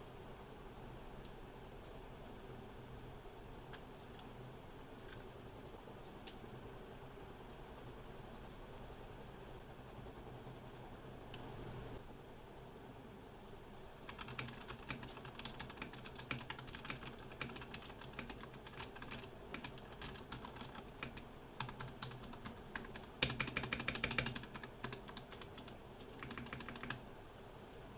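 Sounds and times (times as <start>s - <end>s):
mechanical keyboard typing: 14.1s - 27.0s.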